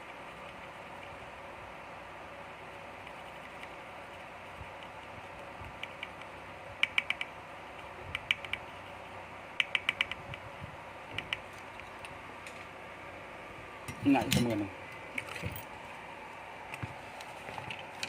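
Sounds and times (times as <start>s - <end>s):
sharp clicks in bursts: 3.0s - 3.8s, 4.8s - 9.0s, 9.6s - 10.5s, 11.1s - 12.6s.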